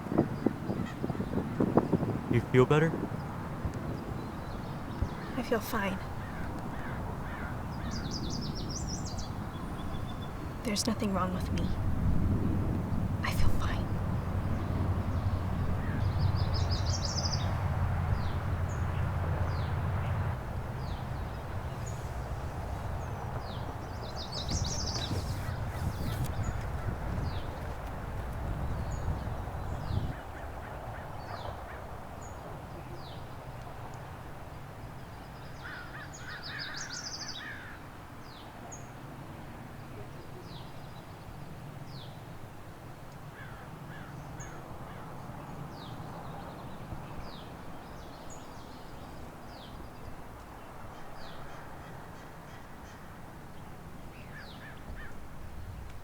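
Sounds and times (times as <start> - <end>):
birds chirping: 0.0 - 11.9, 12.8 - 33.5
steady low rumble: 11.3 - 30.2.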